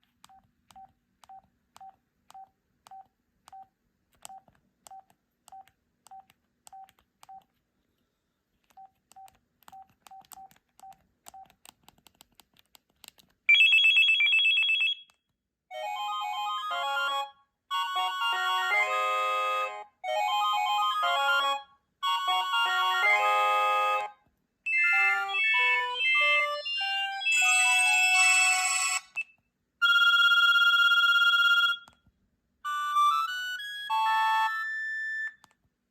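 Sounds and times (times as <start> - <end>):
electronic ringtone melodies: 15.7 - 24.1, 24.7 - 29.2, 29.8 - 31.8.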